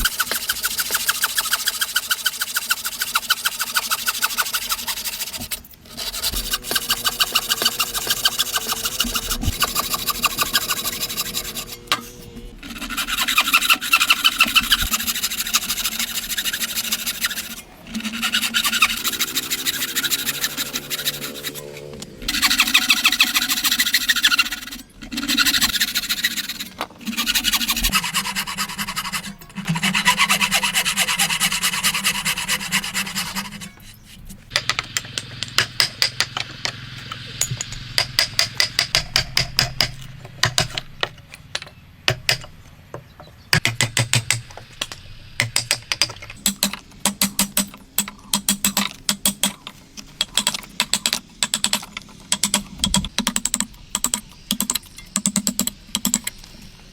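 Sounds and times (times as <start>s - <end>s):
hand saw rasping wood: 0.0s - 34.2s.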